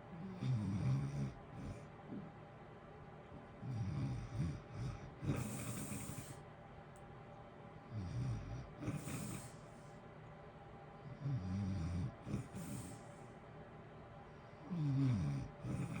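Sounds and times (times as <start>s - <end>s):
person snoring: 3.6s - 6.4s, 7.9s - 9.6s, 11.2s - 13.0s, 14.6s - 16.0s.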